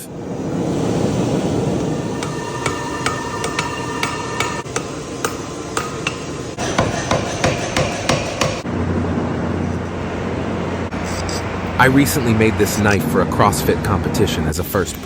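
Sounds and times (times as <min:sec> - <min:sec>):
steady rushing noise: 0:00.0 - 0:06.6.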